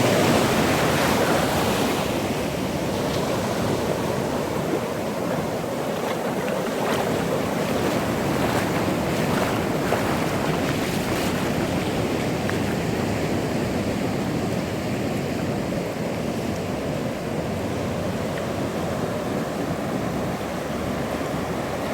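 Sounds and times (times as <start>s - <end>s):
wind buffeting microphone: 0.0s - 16.0s
waves breaking on beach: 0.0s - 21.9s.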